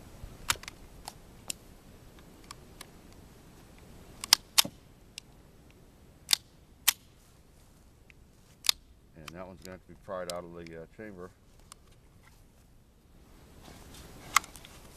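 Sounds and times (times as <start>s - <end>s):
pistol mechanism metallic clicks: 4.2s - 5.3s, 6.3s - 7.1s, 8.6s - 10.7s.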